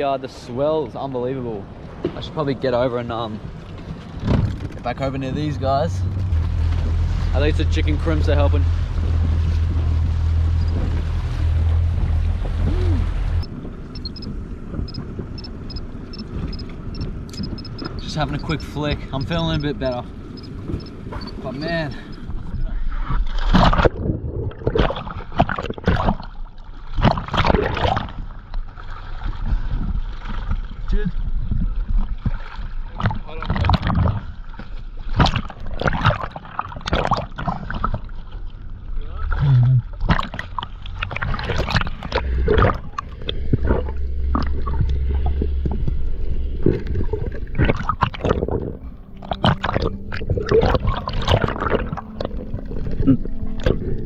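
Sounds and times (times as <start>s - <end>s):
water sloshing and splashing: 0.0s - 54.0s
low rumble: 1.5s - 27.0s, 37.8s - 54.0s.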